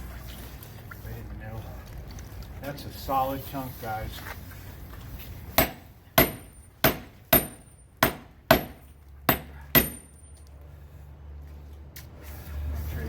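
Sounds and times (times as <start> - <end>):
hammer striking chisel on metal: 5.6 - 10.3.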